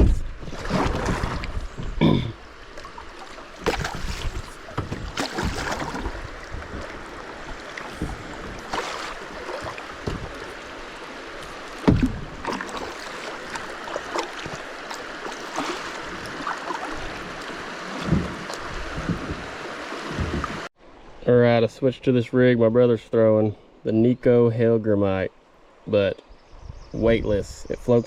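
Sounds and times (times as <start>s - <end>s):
paddle strokes splashing: 0.0s - 1.8s, 2.6s - 20.7s
rushing creek water: 0.0s - 21.5s.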